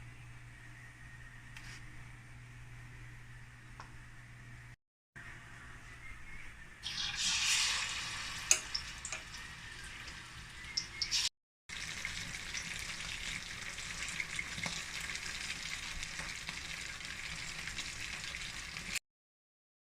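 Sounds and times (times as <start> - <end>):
food deep-frying in oil: 6.8 - 19.0.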